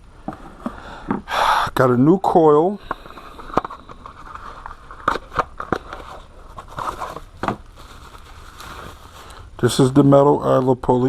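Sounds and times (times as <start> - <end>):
rustling and scraping: 2.8 - 9.8.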